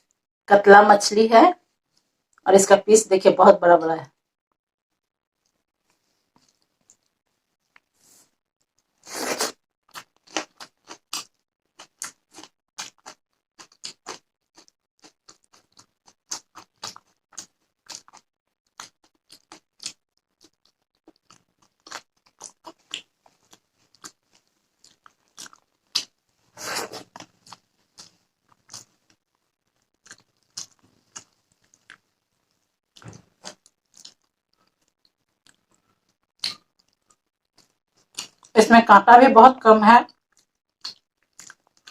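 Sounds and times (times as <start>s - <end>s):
wet chewing: 5.4s - 7.9s, 8.6s - 38.5s, 40.1s - 41.9s
crunchy bites: 36.4s - 38.5s.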